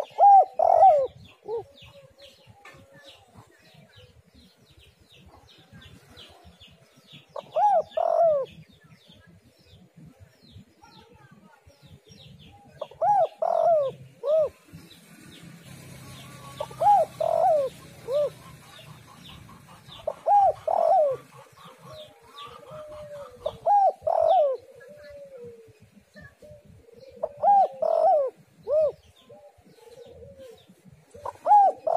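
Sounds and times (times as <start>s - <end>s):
doves cooing: 0.0s - 4.3s, 7.3s - 8.7s, 12.6s - 31.9s
small birds chirping: 0.0s - 31.9s.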